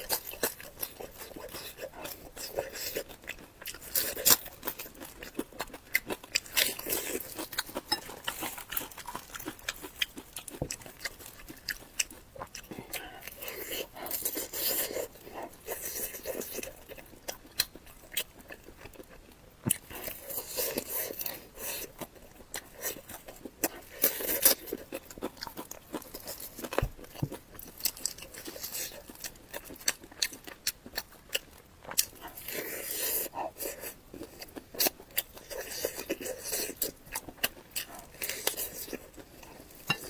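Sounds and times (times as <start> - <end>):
person biting and chewing: 0.0 - 19.1.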